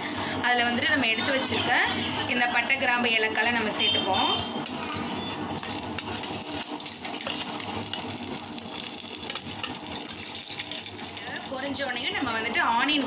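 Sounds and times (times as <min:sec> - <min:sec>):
spices sizzling in hot oil: 0:05.1 - 0:13.0.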